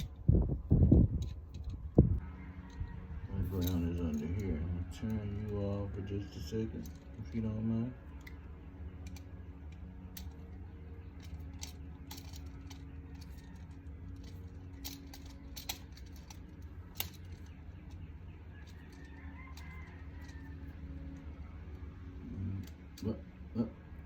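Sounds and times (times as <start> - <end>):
steady low hum: 0.0 - 24.0
small metallic clicks and clinks: 9.0 - 21.4.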